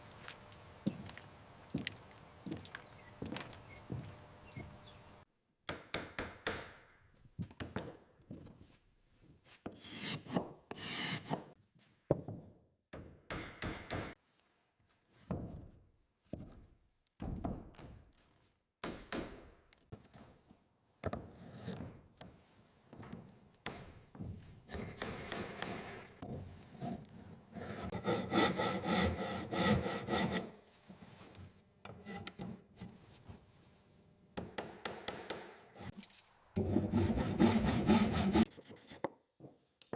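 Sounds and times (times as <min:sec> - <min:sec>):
rasping strokes on wood: 0:26.7 - 0:30.6, 0:36.6 - 0:39.0.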